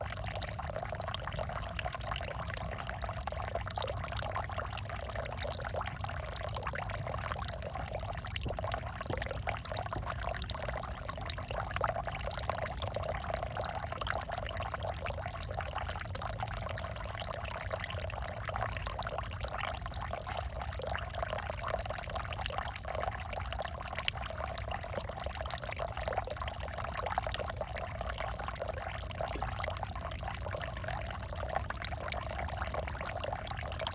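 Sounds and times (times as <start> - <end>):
water pouring and splashing: 6.5 - 11.6, 27.4 - 33.9.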